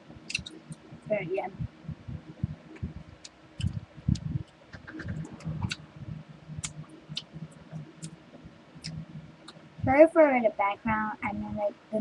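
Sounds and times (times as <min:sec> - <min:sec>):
wet mouth clicks and smacks: 0:00.3 - 0:00.6.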